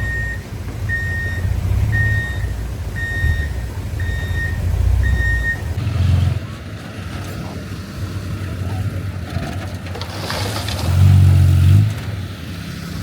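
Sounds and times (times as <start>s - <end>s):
reverse alarm beeping: 0.0s - 5.8s
diesel engine rumble: 0.0s - 13.0s.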